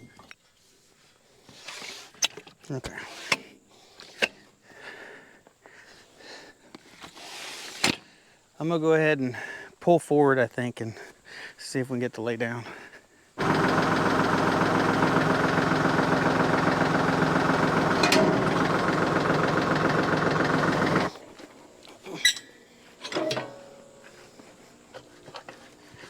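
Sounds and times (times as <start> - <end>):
tractor engine running: 13.4 - 21.2.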